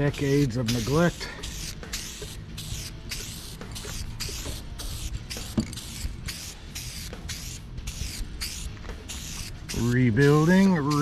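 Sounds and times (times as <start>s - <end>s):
aerosol spray hissing: 0.0s - 11.0s.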